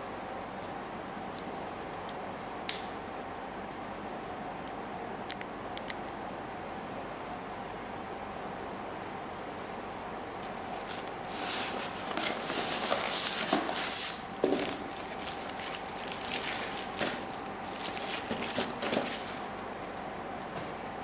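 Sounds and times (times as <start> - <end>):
packaging rustling and crinkling: 10.4 - 20.0.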